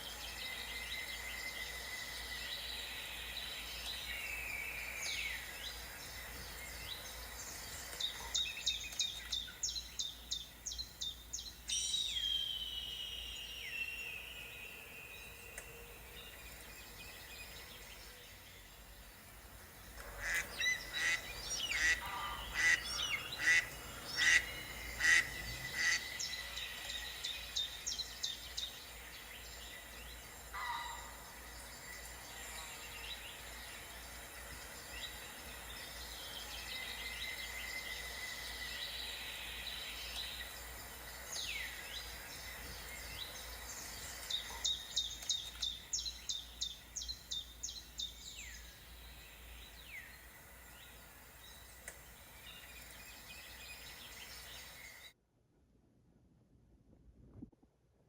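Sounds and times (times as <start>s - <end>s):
rapid high bird calls: 20.0s - 28.5s.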